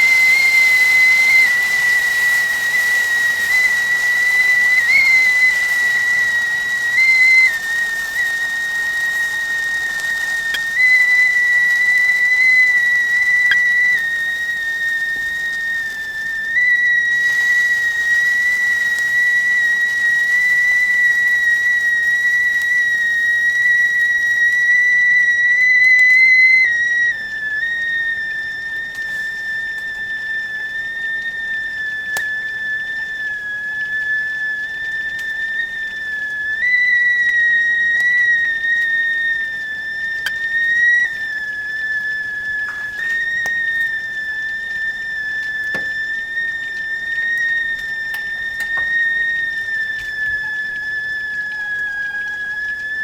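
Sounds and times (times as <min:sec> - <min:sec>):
hiss of steam: 0:00.0 - 0:32.6
whistling kettle: 0:00.0 - 0:53.0.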